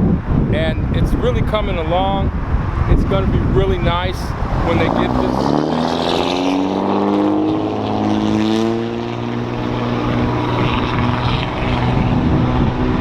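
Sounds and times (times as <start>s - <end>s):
highway traffic noise: 0.0s - 13.0s
loud engine passing: 4.1s - 13.0s.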